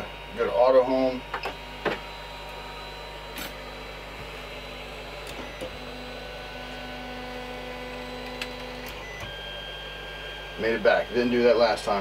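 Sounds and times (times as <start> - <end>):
steady hum: 0.0 - 12.0
stepper motors whining: 0.0 - 12.0.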